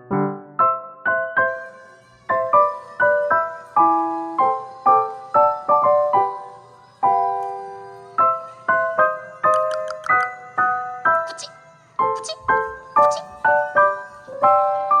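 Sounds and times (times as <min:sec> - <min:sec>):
gentle piano music: 0:00.0 - 0:15.0.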